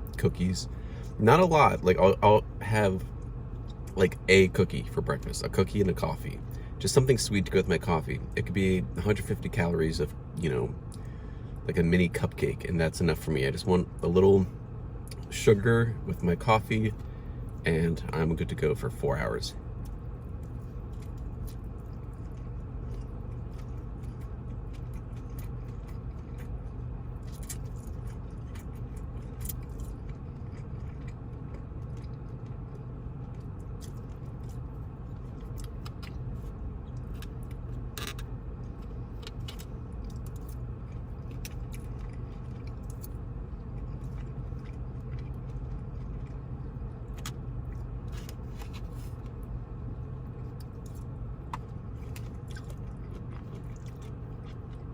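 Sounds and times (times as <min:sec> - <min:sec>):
steady low hum: 0:00.0 - 0:54.9
person chewing food: 0:19.8 - 0:49.4, 0:50.3 - 0:54.9
short clicks and crunches: 0:36.9 - 0:43.2.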